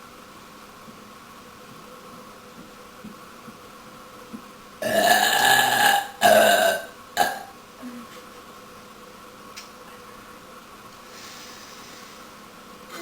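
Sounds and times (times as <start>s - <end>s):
woman belching loudly: 4.8s - 7.5s.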